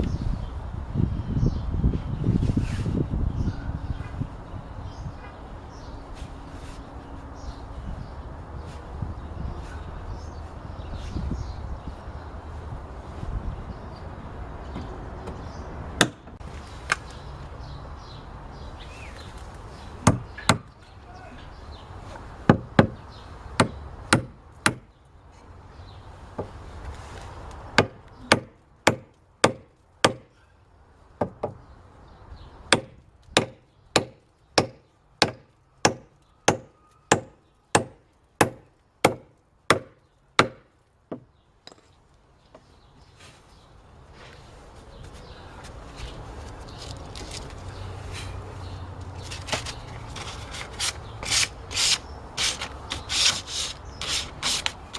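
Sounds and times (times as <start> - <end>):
hammer striking wood: 16.0 - 16.4, 20.0 - 20.7, 22.5 - 23.0, 23.6 - 24.9, 27.8 - 30.3, 32.7 - 41.3.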